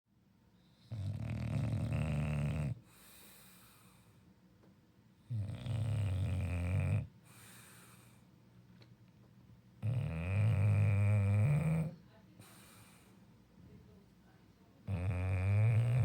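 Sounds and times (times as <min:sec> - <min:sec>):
dog snoring: 0:00.6 - 0:04.0, 0:05.2 - 0:08.2, 0:09.8 - 0:13.1, 0:14.8 - 0:16.0
dog breathing: 0:00.6 - 0:04.2, 0:05.3 - 0:08.3, 0:09.8 - 0:13.4.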